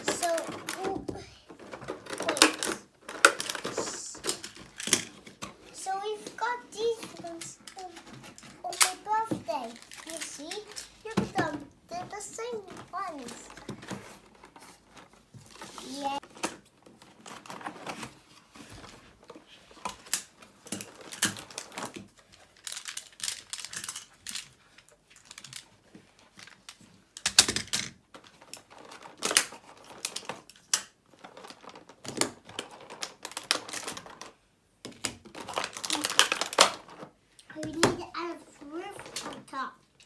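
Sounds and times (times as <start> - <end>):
plastic tiles clicking and clattering: 0.0 - 13.8, 19.9 - 38.0.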